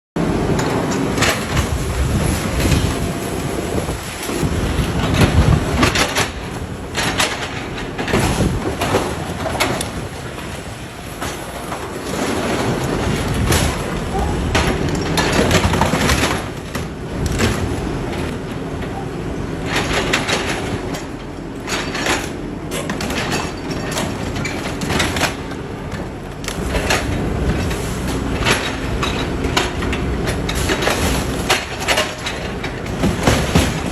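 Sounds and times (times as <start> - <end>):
engine running under load: 0.2 - 33.9
metal clanking and crunching: 0.2 - 33.9.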